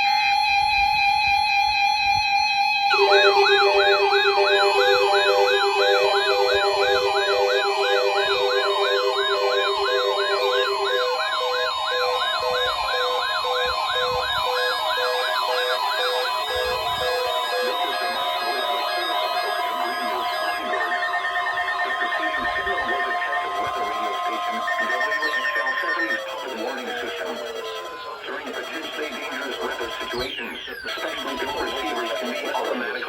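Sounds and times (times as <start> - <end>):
warbling electronic siren: 0.0 - 33.0
repeated beeps: 2.9 - 11.8
steady electronic tone: 2.9 - 26.4.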